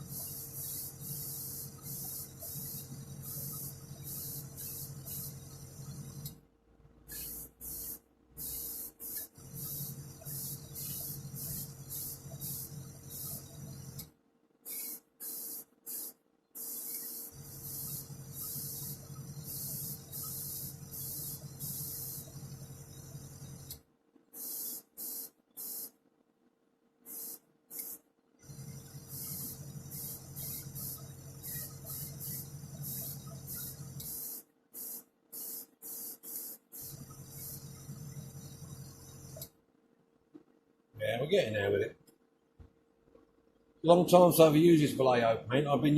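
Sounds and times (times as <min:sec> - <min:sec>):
airbrush spraying bursts: 0:00.0 - 0:06.4, 0:07.0 - 0:26.0, 0:27.1 - 0:39.5.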